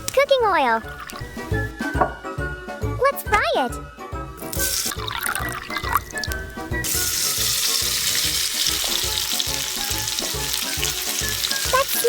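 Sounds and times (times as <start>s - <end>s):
chicken deep-frying in oil: 4.5s - 12.0s.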